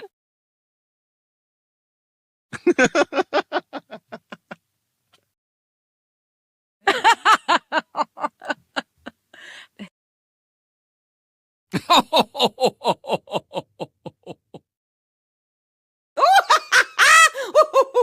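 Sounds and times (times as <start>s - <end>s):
person laughing: 2.5s - 4.6s, 6.8s - 9.9s, 11.7s - 14.7s, 16.2s - 18.0s
breath in: 9.4s - 9.8s.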